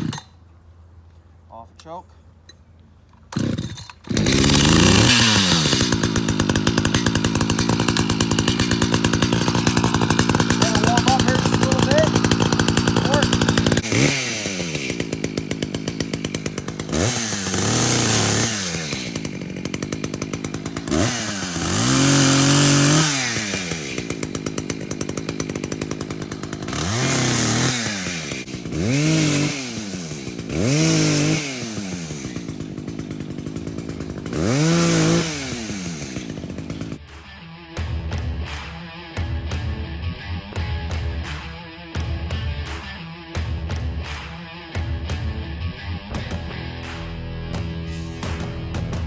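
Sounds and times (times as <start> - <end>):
chainsaw idling and revving: 0.0 - 0.4, 3.3 - 37.0.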